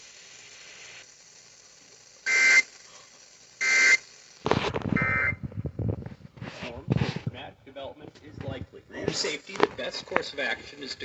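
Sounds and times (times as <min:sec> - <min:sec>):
two-tone warbling data bursts: 0:02.3 - 0:02.7, 0:03.6 - 0:04.0, 0:05.0 - 0:05.4.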